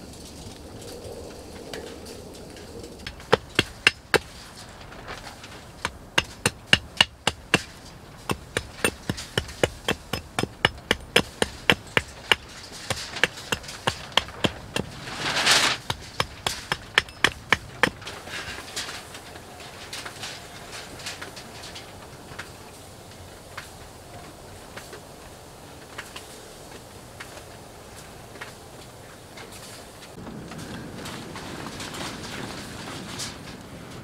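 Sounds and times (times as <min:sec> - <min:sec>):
rapid sharp knocks: 0:03.0 - 0:04.4, 0:05.8 - 0:18.0.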